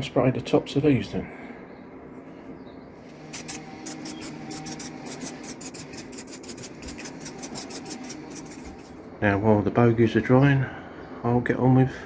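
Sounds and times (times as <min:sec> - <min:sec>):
spray paint bursts: 0:03.1 - 0:09.0.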